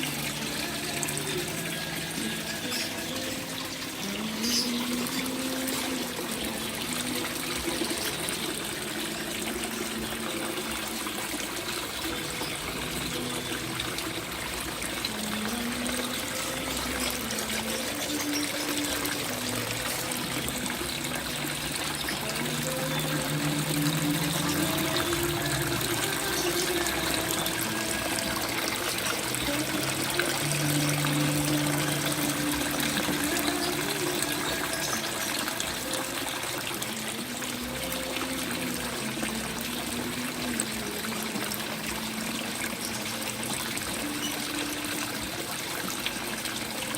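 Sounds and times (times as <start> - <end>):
water trickling and splashing: 0.0 - 46.9.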